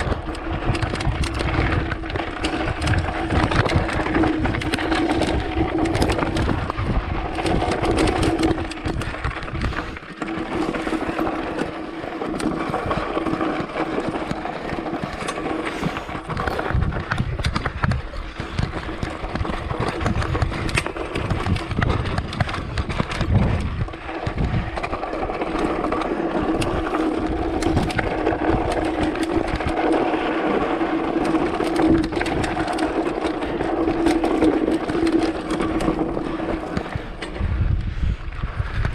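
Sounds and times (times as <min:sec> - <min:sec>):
wind on microphone: 0:00.0 - 0:10.7, 0:15.6 - 0:25.0, 0:35.8 - 0:38.9
bicycle rattling over rough trail: 0:00.0 - 0:38.9.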